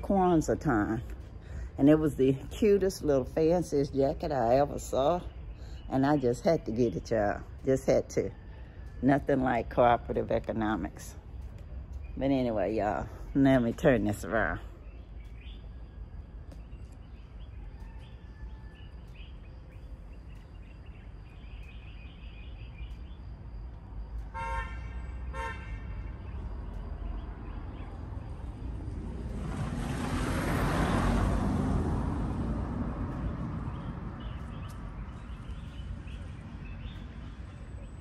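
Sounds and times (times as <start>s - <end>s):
vehicle horn toots: 24.3s - 26.2s
vehicle driving past: 24.9s - 38.0s.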